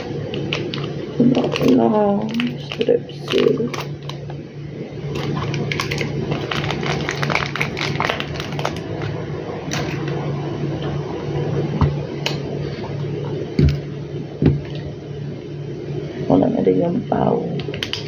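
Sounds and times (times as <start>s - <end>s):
lozenge pack clicking and crinkling: 0.0s - 4.4s, 5.1s - 10.2s, 17.6s - 18.0s
steady low hum: 0.0s - 18.0s.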